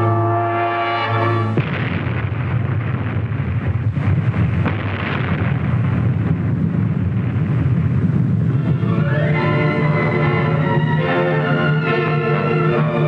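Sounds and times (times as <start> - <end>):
sharp explosion cracks: 1.4 - 9.4
explosion low rumble: 1.4 - 11.0.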